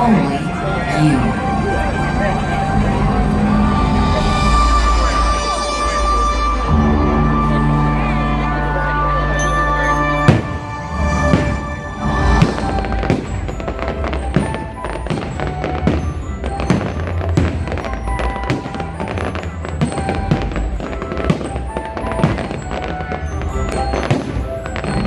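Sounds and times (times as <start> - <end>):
music playing: 0.0 - 25.0
fireworks bangs and pops: 10.3 - 25.0.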